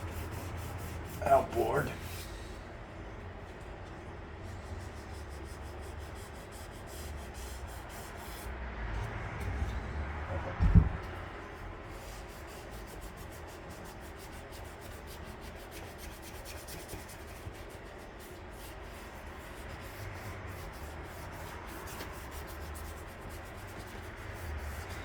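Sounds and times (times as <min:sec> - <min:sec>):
sandpaper rubbing: 0:00.0 - 0:02.2, 0:04.6 - 0:08.5, 0:11.9 - 0:25.0.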